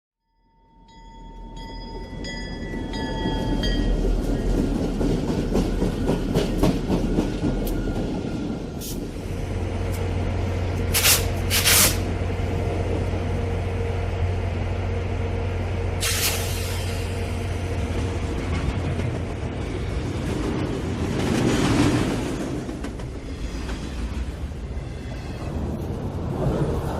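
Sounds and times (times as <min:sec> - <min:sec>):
train rumble: 0:00.8 - 0:26.9
train wheels clacking on rails: 0:01.6 - 0:09.2, 0:16.0 - 0:26.6
short loud hisses: 0:11.0 - 0:12.0, 0:16.0 - 0:17.1.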